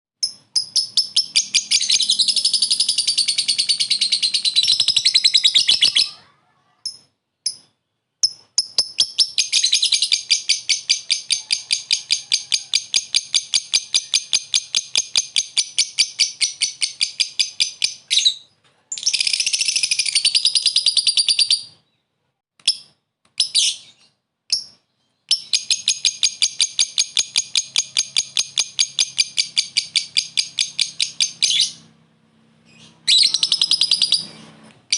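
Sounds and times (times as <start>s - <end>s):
lovebird shrill chattering: 0.2s - 6.2s, 32.8s - 34.4s.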